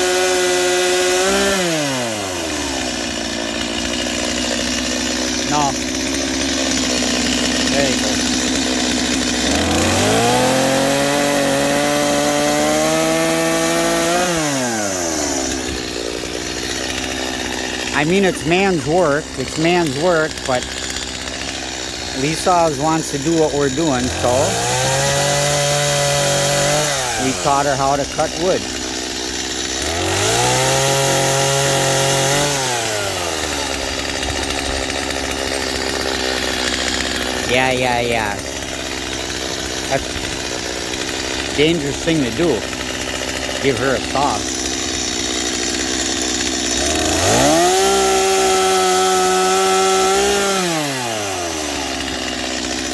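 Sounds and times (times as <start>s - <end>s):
chainsaw cutting through log: 0.0s - 52.9s.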